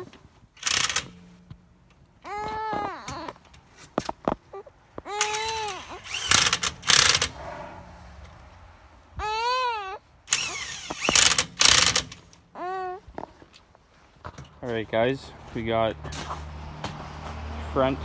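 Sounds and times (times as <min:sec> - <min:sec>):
electric impact wrench: 0:00.6 - 0:01.3, 0:05.2 - 0:07.5, 0:10.3 - 0:12.4.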